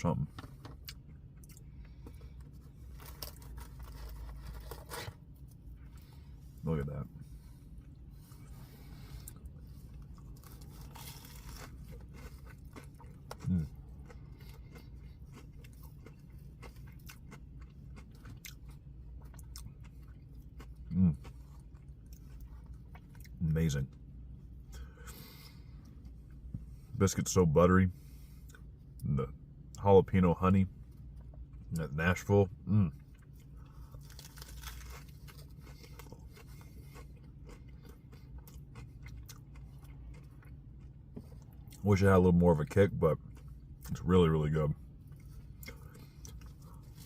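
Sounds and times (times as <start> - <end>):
low steady hum: 0.0 - 47.0
person chewing crunchy food: 0.3 - 23.7, 32.9 - 41.8, 43.2 - 44.0, 45.0 - 47.0.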